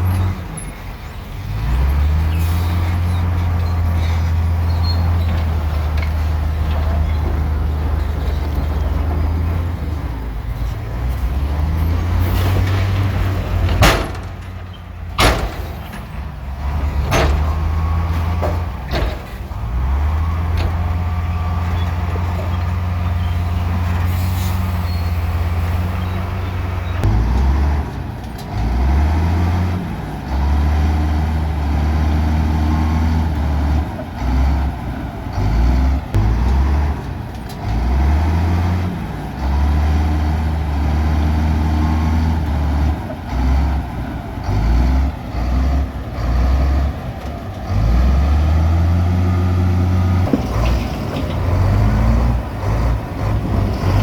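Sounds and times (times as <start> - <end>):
diesel machinery engine droning: 0.0 - 54.0
metal clanks: 10.6 - 19.7, 50.2 - 54.0.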